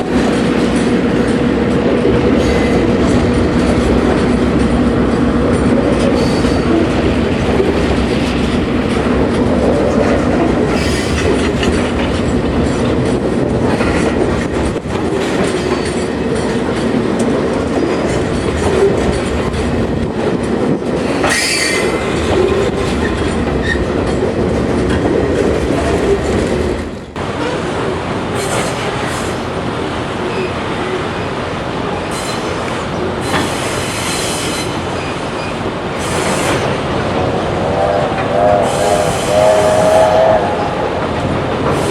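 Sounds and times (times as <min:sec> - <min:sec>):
train wheels clattering: 0:00.0 - 0:25.0, 0:32.0 - 0:41.9
high wheel squeal: 0:33.2 - 0:41.9.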